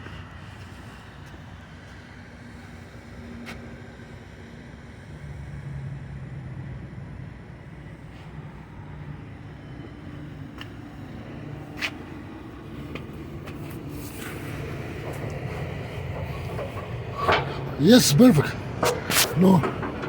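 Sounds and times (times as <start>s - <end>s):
diesel truck engine running: 7.8s - 20.0s.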